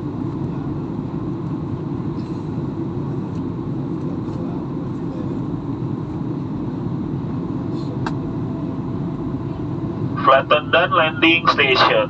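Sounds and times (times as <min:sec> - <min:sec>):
airliner cabin engine rumble: 0:00.0 - 0:12.0.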